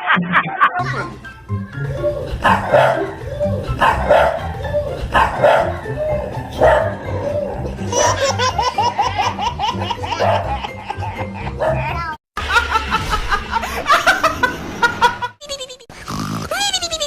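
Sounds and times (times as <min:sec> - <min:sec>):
background music: 0:00.8 - 0:14.3
dog barking: 0:02.4 - 0:03.1, 0:03.8 - 0:04.5, 0:05.1 - 0:05.9, 0:06.6 - 0:07.0, 0:10.2 - 0:10.5.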